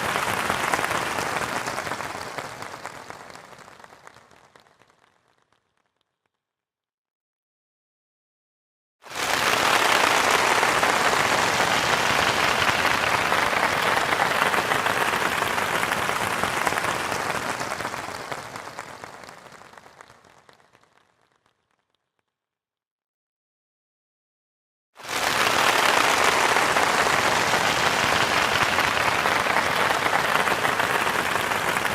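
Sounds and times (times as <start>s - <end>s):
audience applauding: 0.0s - 5.4s, 9.1s - 21.2s, 25.0s - 31.9s.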